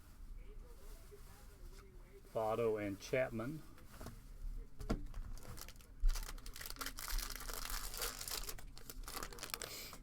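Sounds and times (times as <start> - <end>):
card pack wrapper tearing: 5.4 - 10.0.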